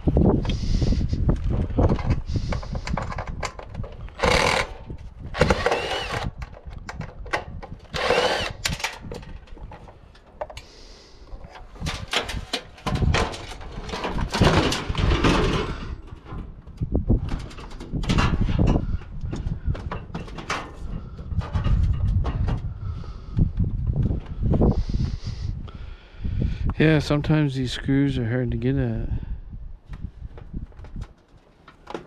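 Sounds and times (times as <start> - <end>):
loose parts clattering: 1.6 - 10.7, 11.3 - 16.5
cordless drill whining: 4.0 - 6.4, 7.8 - 9.0.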